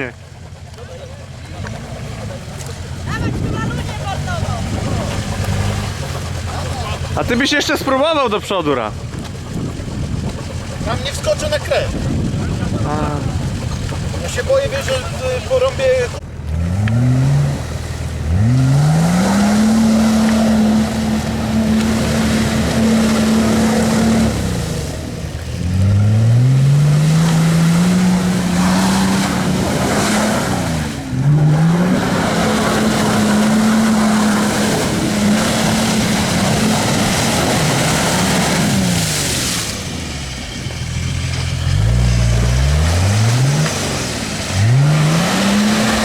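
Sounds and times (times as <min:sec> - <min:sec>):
engine revving hard: 0:14.4 - 0:40.2, 0:40.8 - 0:46.0.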